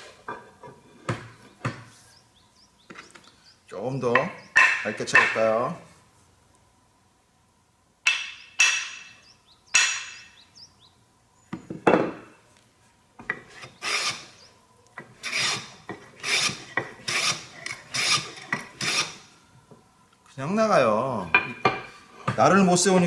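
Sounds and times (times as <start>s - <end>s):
hand plane strokes on wood: 13.3s - 14.3s, 15.1s - 19.2s.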